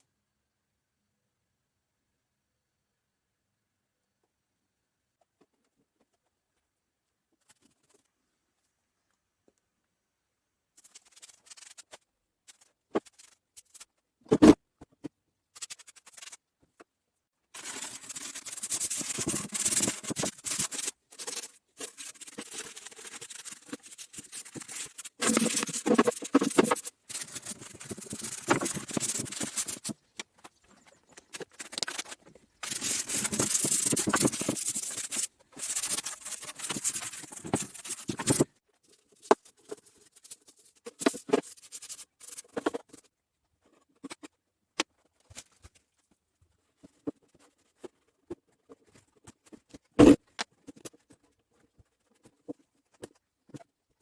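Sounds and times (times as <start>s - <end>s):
scraping and rubbing on surface: 10.8s - 14.6s, 15.5s - 16.5s, 17.6s - 43.1s.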